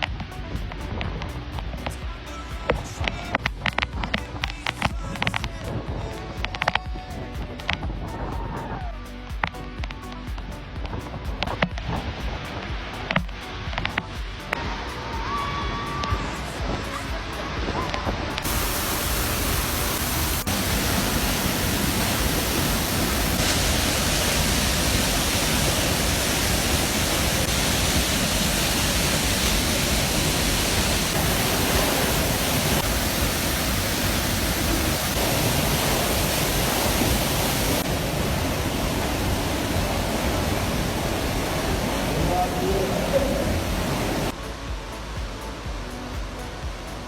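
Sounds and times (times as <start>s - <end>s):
waterfall rushing: 10.9s - 47.0s.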